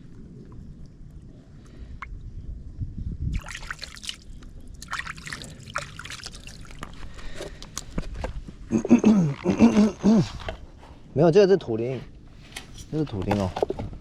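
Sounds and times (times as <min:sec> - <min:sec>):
splashes and clicks: 0:03.3 - 0:07.9
water trickling and sloshing: 0:03.3 - 0:08.2.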